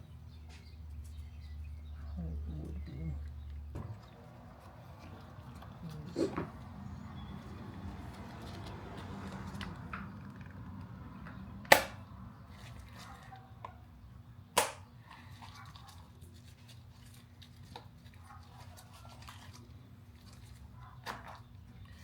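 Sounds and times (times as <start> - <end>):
sharp clicks of metal parts: 11.6 - 12.0.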